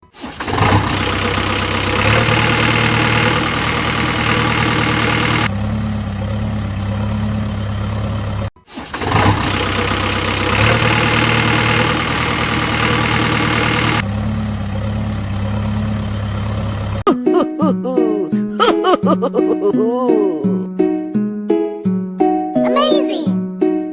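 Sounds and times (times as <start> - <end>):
diesel engine humming: 0.0 - 17.1.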